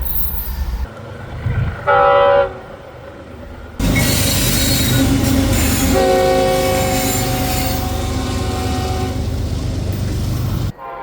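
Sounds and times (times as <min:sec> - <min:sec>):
train passing close by: 0:00.8 - 0:11.0
train horn chord: 0:05.0 - 0:11.0.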